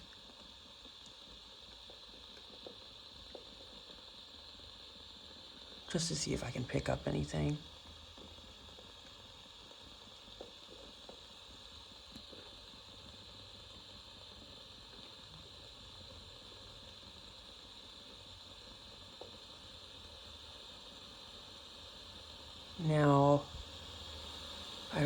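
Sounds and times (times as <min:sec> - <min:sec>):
radio static hiss: 0:05.4 - 0:08.6, 0:22.4 - 0:25.0.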